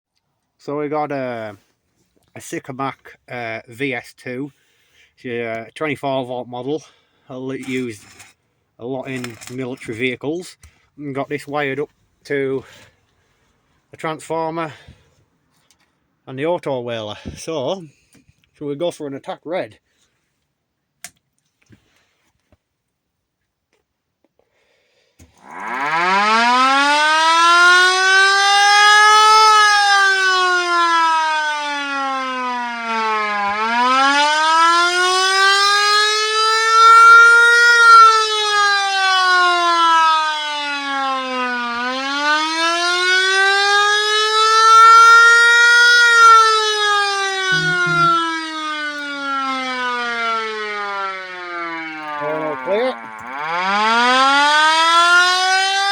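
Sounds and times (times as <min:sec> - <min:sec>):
electric siren wailing: 0:25.4 - 0:55.9.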